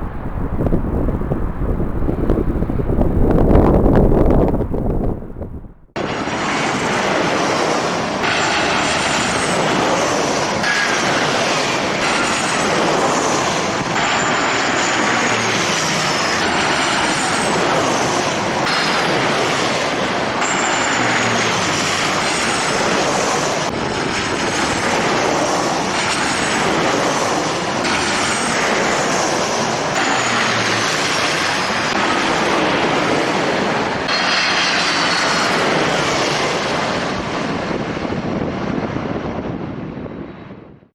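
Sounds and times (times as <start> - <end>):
high falling whines: 0.0 - 5.9
jet engines running: 0.0 - 40.6.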